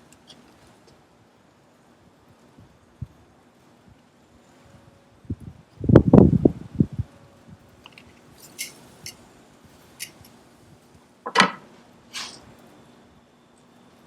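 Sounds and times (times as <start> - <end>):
utensil scraping grill: 7.8 - 10.7, 11.3 - 12.6
metal utensils clinking on grill: 7.9 - 9.2, 9.9 - 10.4.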